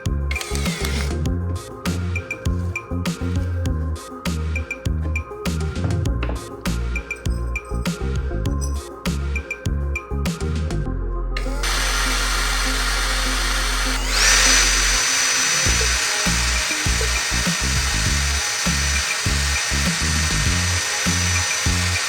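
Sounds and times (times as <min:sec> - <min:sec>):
background music: 0:00.0 - 0:22.0
power tool motor whining: 0:00.3 - 0:01.2, 0:11.4 - 0:22.0.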